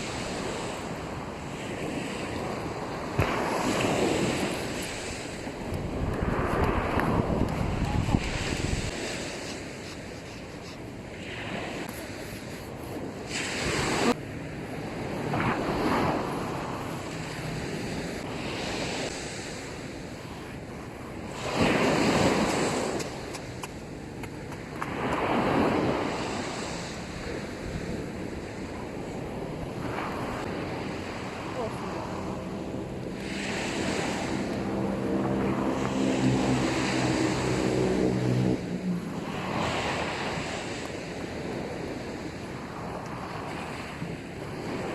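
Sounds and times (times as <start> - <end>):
waves washing up a beach: 0.0 - 44.9
wind buffeting microphone: 0.0 - 44.9.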